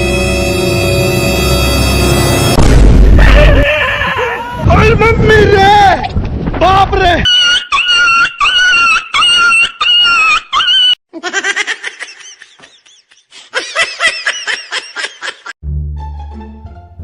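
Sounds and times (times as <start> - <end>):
high-pitched laughter-like sound: 7.3 - 15.6.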